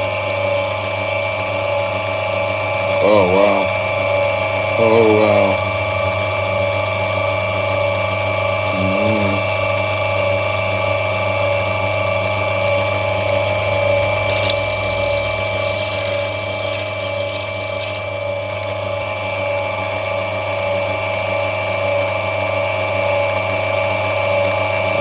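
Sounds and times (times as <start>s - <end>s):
grinding machine motor hum: 14.3s - 18.0s.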